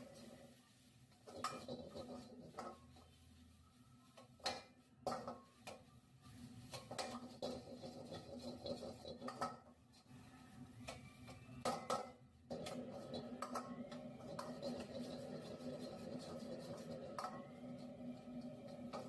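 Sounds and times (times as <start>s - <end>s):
metal utensil clattering against pan: 1.2s - 3.1s, 4.2s - 5.8s, 6.7s - 9.7s, 11.6s - 17.6s.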